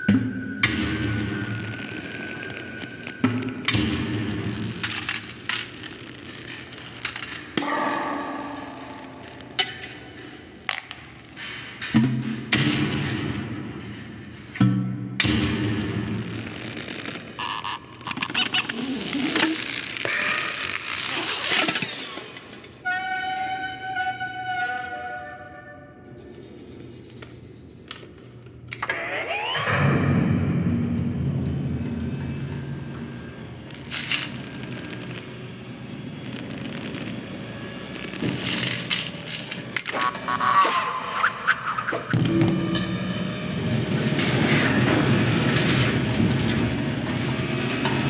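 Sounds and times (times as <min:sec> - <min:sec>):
metallic clanks and clinks: 0:04.9 - 0:12.5.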